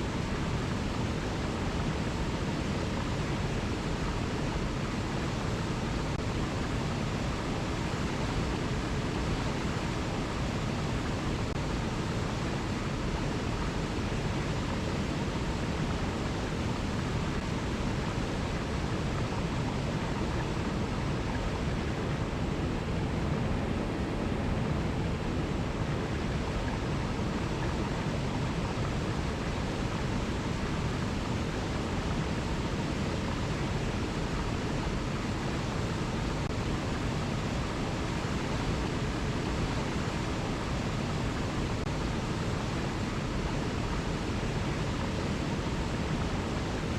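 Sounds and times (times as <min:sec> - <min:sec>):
river rushing over cascades: 0:00.0 - 0:46.9.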